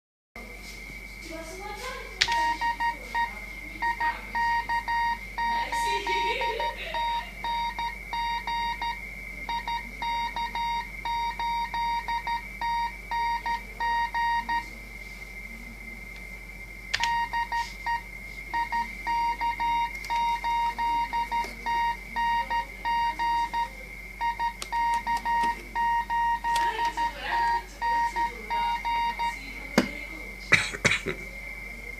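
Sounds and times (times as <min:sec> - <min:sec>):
morse code beeping: 0:02.2 - 0:14.7, 0:17.0 - 0:29.7
sharp clicks: 0:16.9 - 0:17.2, 0:24.5 - 0:25.6, 0:26.5 - 0:27.0.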